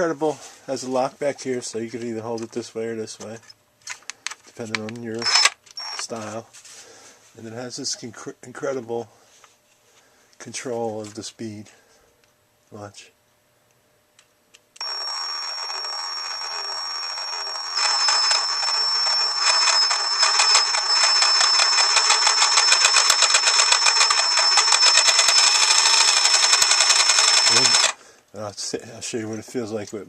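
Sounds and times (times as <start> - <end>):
reciprocating saw whining: 14.8 - 28.0.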